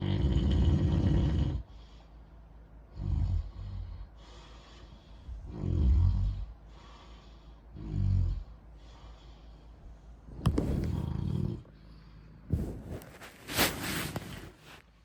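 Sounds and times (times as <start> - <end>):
loud snoring: 0.0 - 1.6, 5.4 - 6.5, 7.8 - 8.5.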